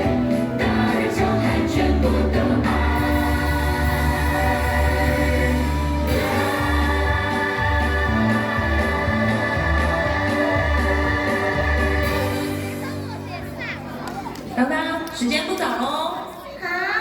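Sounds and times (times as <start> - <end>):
musical theatre song with singing: 0.0 - 13.1.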